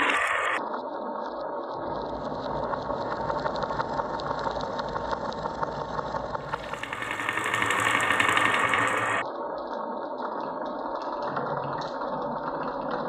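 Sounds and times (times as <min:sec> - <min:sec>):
bright rattle of many marbles: 0:00.0 - 0:00.6, 0:01.8 - 0:09.3
marbles clicking on wooden track: 0:00.0 - 0:00.6, 0:01.8 - 0:09.3.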